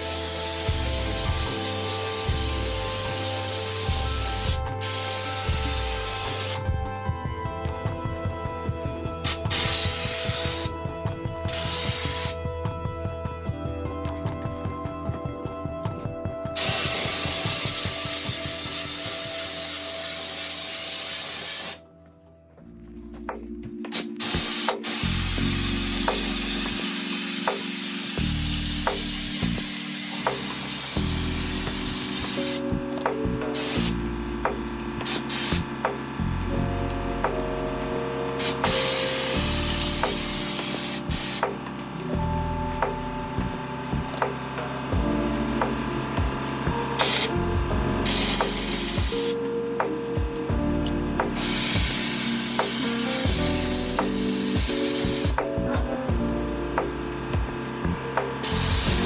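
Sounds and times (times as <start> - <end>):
spray gun hissing: 0.0 - 6.7, 9.2 - 10.7, 11.5 - 12.4, 16.6 - 21.8, 23.9 - 36.5, 38.4 - 42.0, 46.9 - 47.4, 48.0 - 56.0, 58.3 - 59.0
background music: 0.0 - 59.0.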